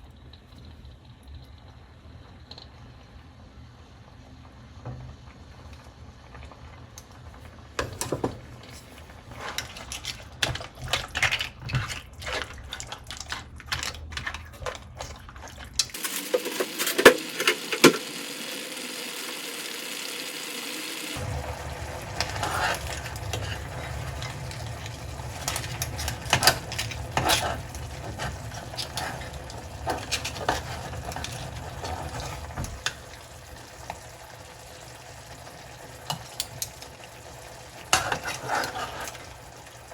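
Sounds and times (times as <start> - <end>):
running water from a sink: 15.0 - 39.9.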